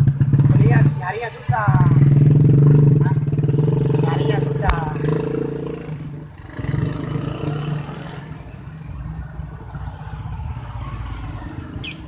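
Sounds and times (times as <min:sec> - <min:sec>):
vehicle engine running: 0:00.0 - 0:06.8.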